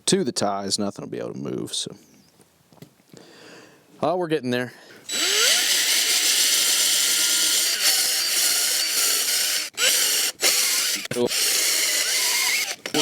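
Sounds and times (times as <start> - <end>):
drill boring into wood: 5.1 - 13.0.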